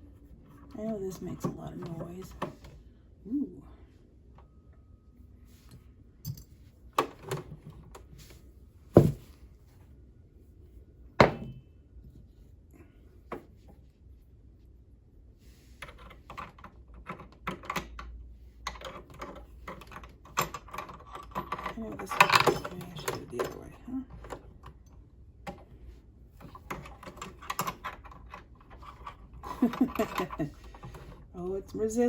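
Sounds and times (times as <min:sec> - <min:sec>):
sharp knocks of hard parts: 0:08.9 - 0:09.3, 0:11.2 - 0:11.6
small clicks and rattles: 0:15.8 - 0:25.7, 0:26.4 - 0:31.2.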